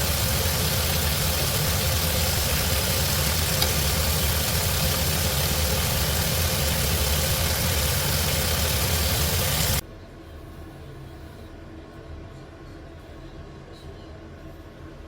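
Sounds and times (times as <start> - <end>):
even hiss: 0.0 - 9.8
mechanical rumble: 0.0 - 9.8.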